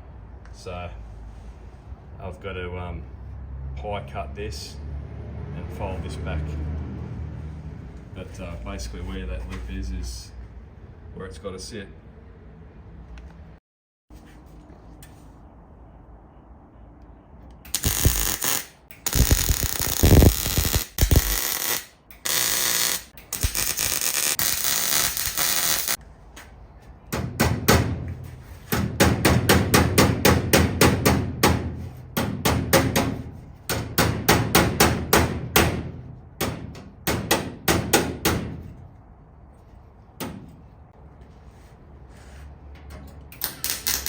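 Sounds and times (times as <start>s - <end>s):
harsh steady noise: 17.7s - 26.0s
hammer blows on sheet metal: 27.1s - 38.8s.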